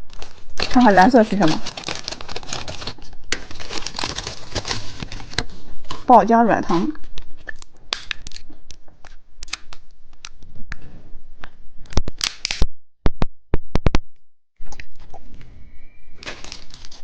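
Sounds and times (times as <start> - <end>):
plastic packaging crinkling: 0.0 - 6.1, 16.2 - 17.0.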